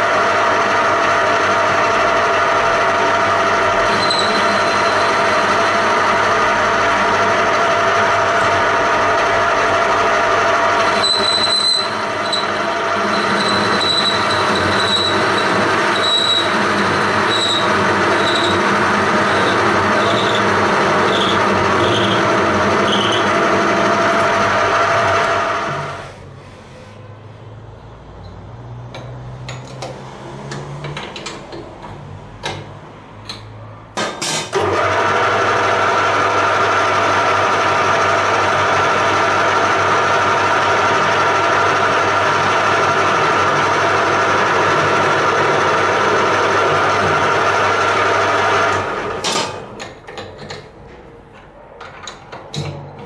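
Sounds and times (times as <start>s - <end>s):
belt grinder running: 0.1s - 26.0s, 34.6s - 49.2s.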